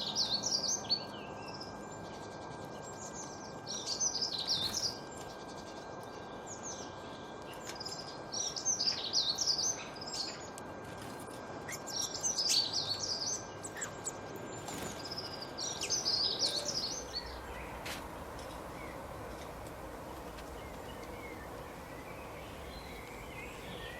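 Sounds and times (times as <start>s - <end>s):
steady background hiss: 11.8s - 23.9s
songbird warbling: 15.3s - 23.9s.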